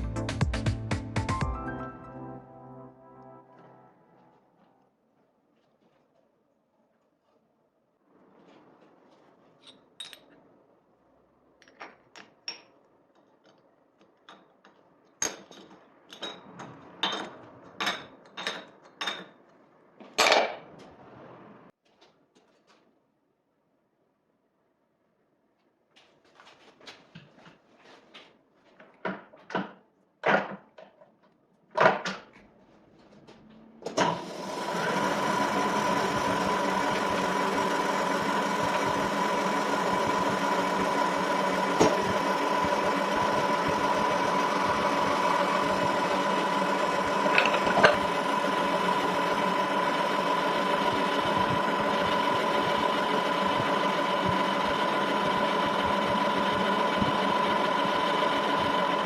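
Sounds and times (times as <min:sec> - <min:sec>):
metal lathe whining: 0:34.0 - 0:59.0
clunks: 0:47.3 - 0:48.1.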